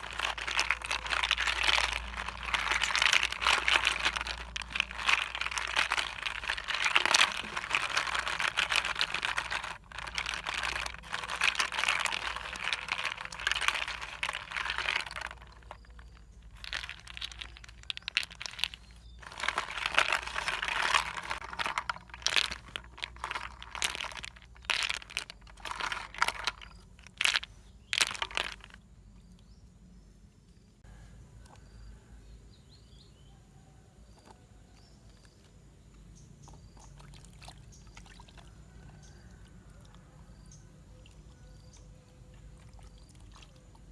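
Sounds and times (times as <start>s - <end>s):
crinkling handling noise: 0.0s - 28.9s.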